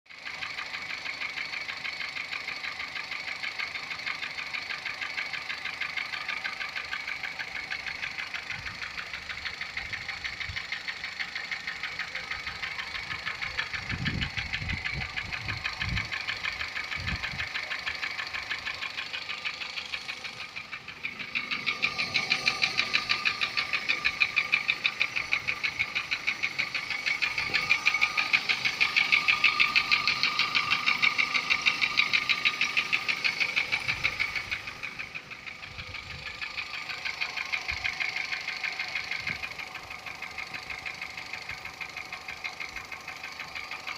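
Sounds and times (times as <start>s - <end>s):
car engine idling: 0.1s - 43.9s
engine clacking tick: 0.1s - 43.9s.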